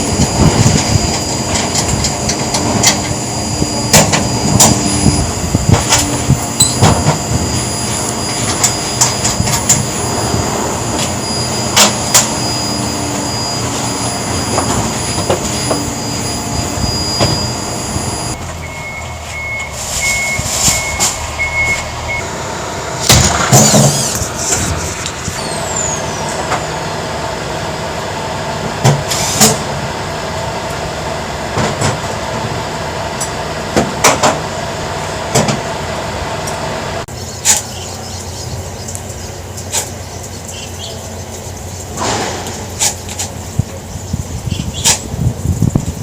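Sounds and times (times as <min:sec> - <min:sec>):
short high beeps: 0:06.6 - 0:07.0, 0:11.0 - 0:22.2
electric drill running: 0:09.8 - 0:18.4.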